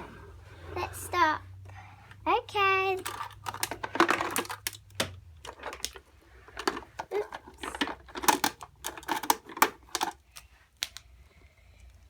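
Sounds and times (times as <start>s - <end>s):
plastic toys clicking and tapping: 2.9s - 11.0s.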